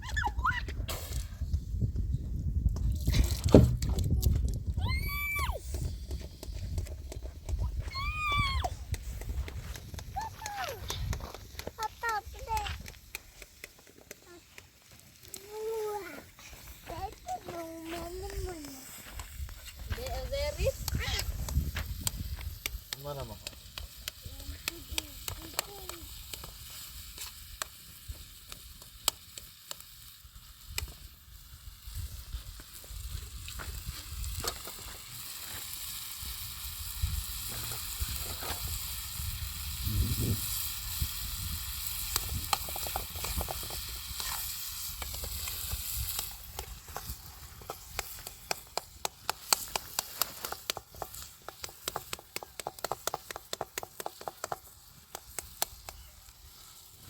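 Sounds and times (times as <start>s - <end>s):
food sizzling in pan: 7.7s - 57.0s
quick regular taps: 47.7s - 56.0s.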